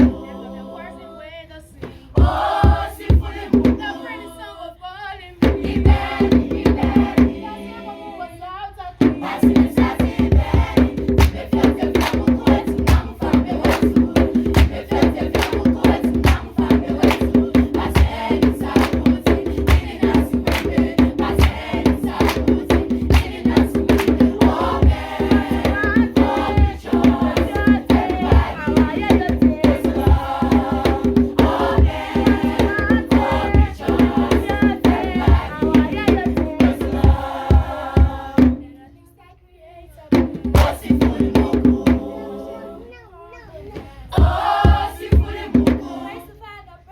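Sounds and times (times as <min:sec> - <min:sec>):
drum beat: 0:02.2 - 0:04.0, 0:05.4 - 0:07.4, 0:09.0 - 0:38.6, 0:40.2 - 0:42.2, 0:44.1 - 0:46.1.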